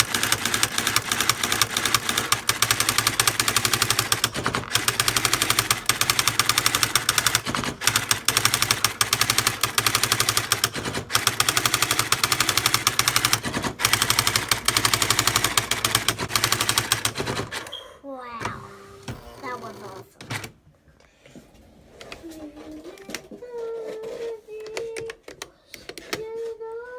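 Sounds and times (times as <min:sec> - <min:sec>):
electric typewriter striking clicks: 0:00.0 - 0:17.7.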